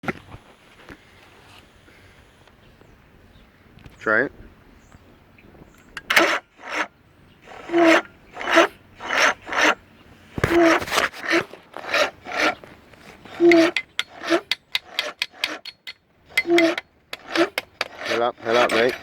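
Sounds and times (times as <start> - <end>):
electric starter cranking outboard: 6.0 - 19.0.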